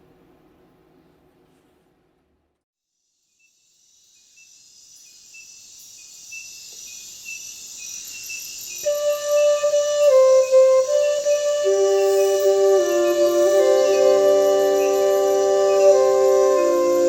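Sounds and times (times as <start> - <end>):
high shimmering chirring: 8.8 - 17.0
flute playing long notes: 8.9 - 17.0.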